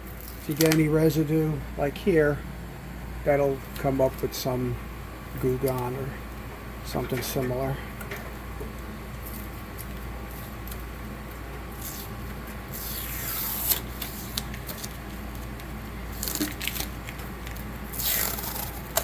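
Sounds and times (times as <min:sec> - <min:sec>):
tape tearing off: 0:11.8 - 0:15.0, 0:16.1 - 0:19.0.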